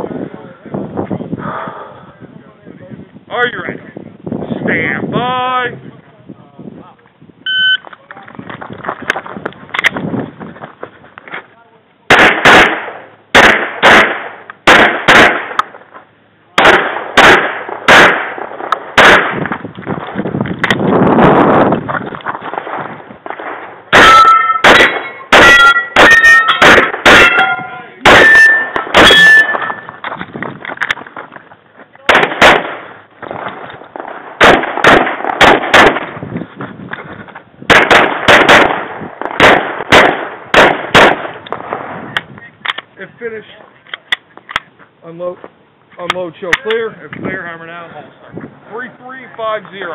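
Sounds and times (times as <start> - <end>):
pistol shots with echo: 12.1 - 15.7, 16.6 - 19.6, 23.2 - 29.9, 32.1 - 36.2, 37.7 - 41.9.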